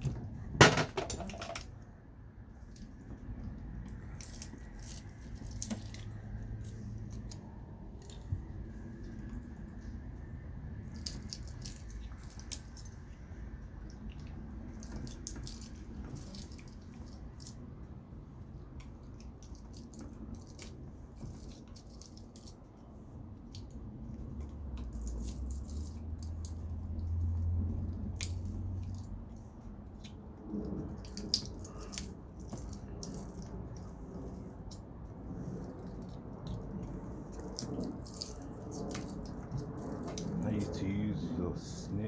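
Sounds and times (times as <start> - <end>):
low rumble: 22.2 - 42.0.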